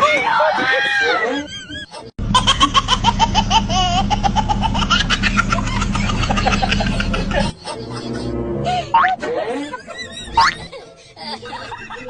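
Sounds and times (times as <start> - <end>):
hearty laughter: 0.1 - 12.0
truck engine rumble: 2.2 - 8.9.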